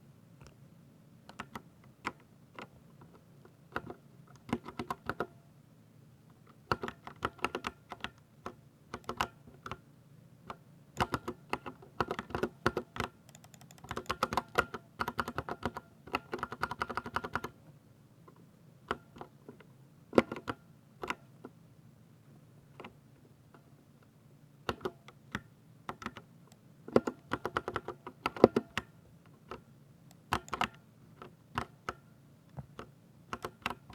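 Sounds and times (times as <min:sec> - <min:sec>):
mechanical keyboard typing: 0:03.8 - 0:05.3, 0:06.7 - 0:08.2, 0:09.0 - 0:09.4, 0:11.0 - 0:17.5, 0:26.9 - 0:28.9, 0:29.5 - 0:32.0, 0:32.8 - 0:33.9.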